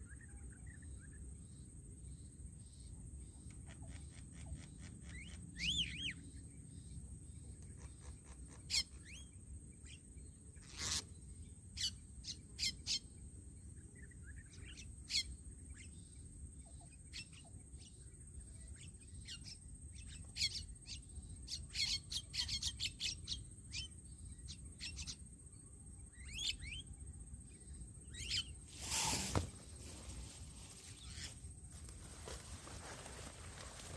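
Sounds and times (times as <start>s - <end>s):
rustling: 28.7s - 33.9s.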